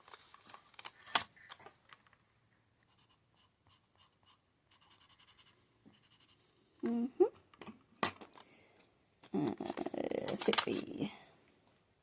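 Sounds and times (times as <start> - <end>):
pencil scratching on paper: 2.9 - 6.5.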